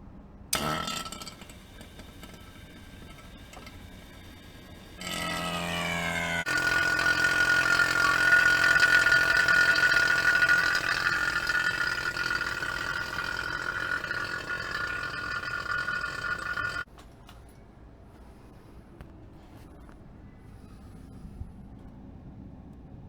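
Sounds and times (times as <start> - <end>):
machine whining and humming: 0.5 - 16.9.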